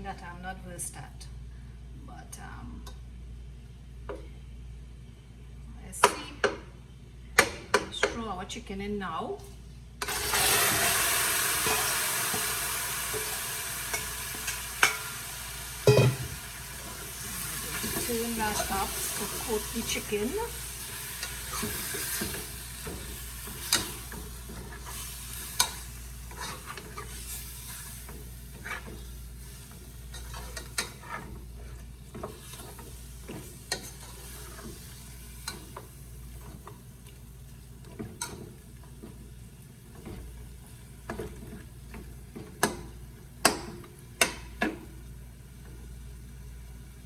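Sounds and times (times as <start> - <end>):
chicken sizzling in pot: 10.0 - 47.0
spoon knocking against pot: 15.9 - 16.3
spoon scraping pot: 21.2 - 27.9, 28.5 - 34.8.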